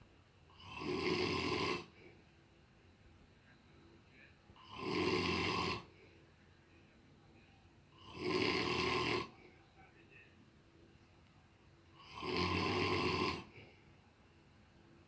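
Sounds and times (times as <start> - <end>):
man snoring: 0.6 - 2.0, 4.6 - 5.9, 8.0 - 9.4, 12.0 - 13.6.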